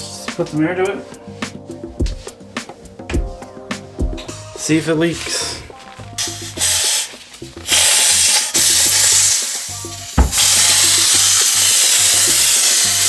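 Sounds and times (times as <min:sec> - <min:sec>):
compressed air hissing: 0:06.2 - 0:13.0.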